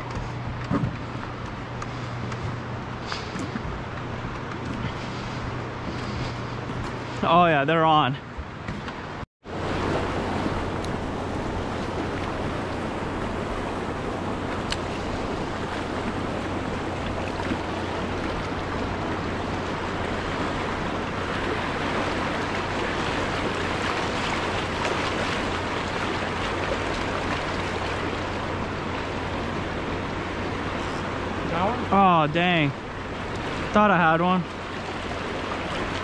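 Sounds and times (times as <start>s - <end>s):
river water rushing: 9.0s - 36.0s.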